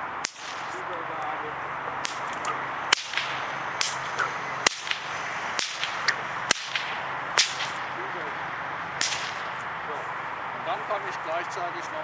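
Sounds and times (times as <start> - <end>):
bullwhip cracking: 0.1 - 10.0
softer whip snaps: 0.2 - 1.3, 1.9 - 9.8.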